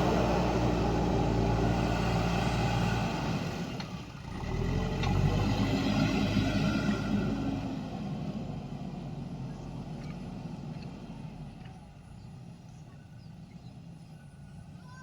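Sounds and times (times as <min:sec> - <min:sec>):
heavy diesel engine running: 0:00.0 - 0:09.6.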